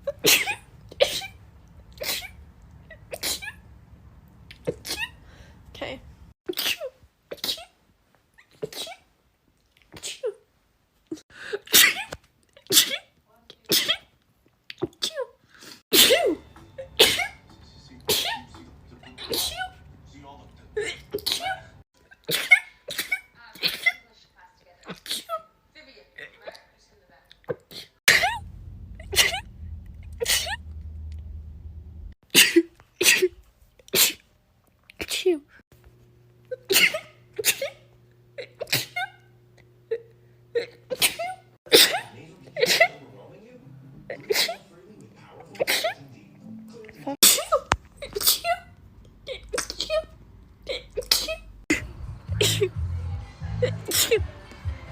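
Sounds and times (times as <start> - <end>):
person sneezing: 11.4 - 14.0, 15.0 - 17.4, 18.0 - 18.5, 20.8 - 24.0, 30.2 - 30.6, 32.3 - 34.2, 38.6 - 39.1, 40.7 - 43.0, 47.2 - 48.6, 50.7 - 52.7, 53.7 - 54.2.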